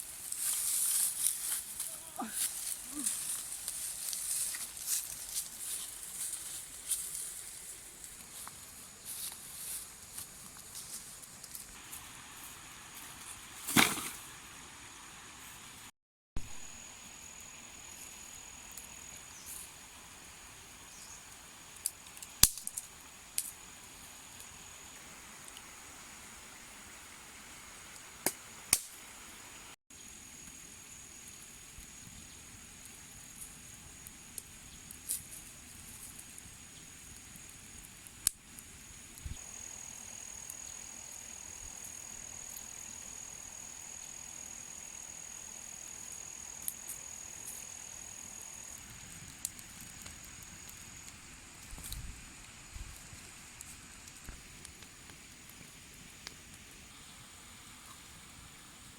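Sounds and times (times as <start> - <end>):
high insect drone: 0.0 - 15.6, 16.4 - 27.6, 29.2 - 55.9.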